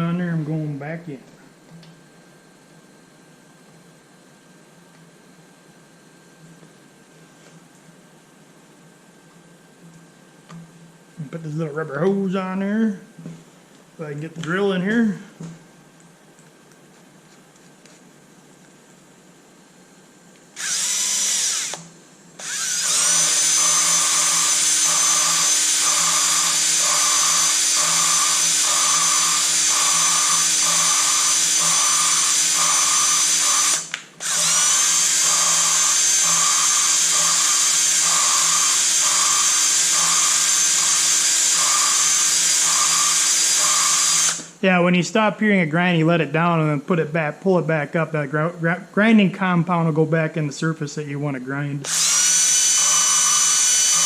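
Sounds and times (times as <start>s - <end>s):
electric drill motor whine: 20.5s - 44.6s, 51.8s - 54.0s
gritty valve grinding: 22.4s - 44.6s.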